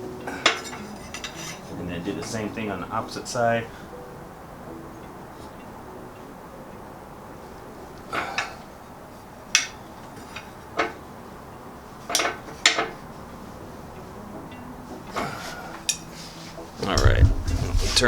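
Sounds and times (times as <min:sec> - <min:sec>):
metal strip knocking: 0:16.9 - 0:18.0.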